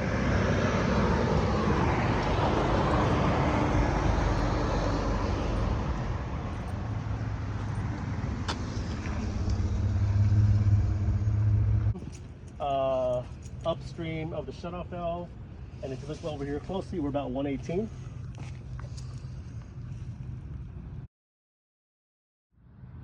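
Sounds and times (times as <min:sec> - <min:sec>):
broad rushing noise: 0:00.0 - 0:12.0.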